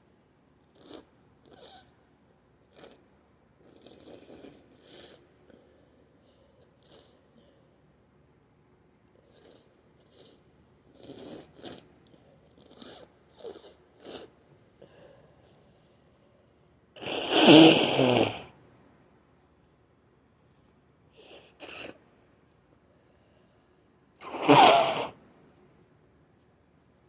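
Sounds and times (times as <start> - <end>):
forceful nose blast: 17.0 - 18.4, 24.2 - 25.1
congested nose sniffing: 17.0 - 18.5, 24.2 - 25.1.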